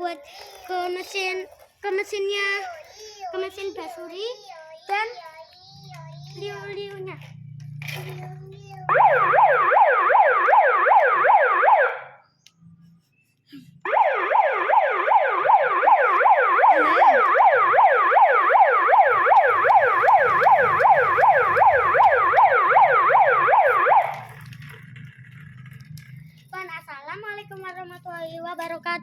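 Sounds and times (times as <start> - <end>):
toy siren yelping: 8.8 - 12.2, 13.8 - 24.4.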